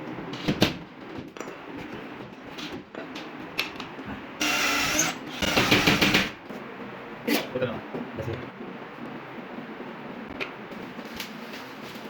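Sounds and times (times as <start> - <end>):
power tool running: 4.4 - 6.3.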